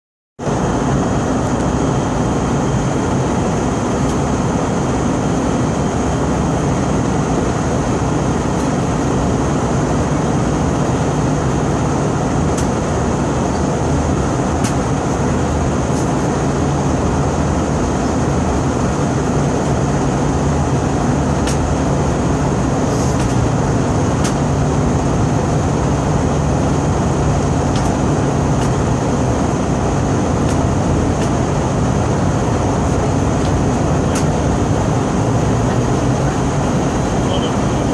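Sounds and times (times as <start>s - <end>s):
airliner engine and airflow noise: 0.4s - 37.9s
faint high whine: 33.8s - 37.9s.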